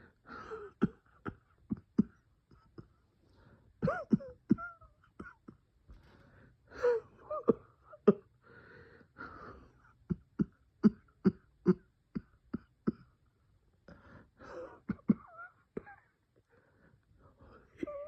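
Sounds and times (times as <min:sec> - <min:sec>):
person coughing: 0:03.8 - 0:05.6, 0:14.7 - 0:16.1.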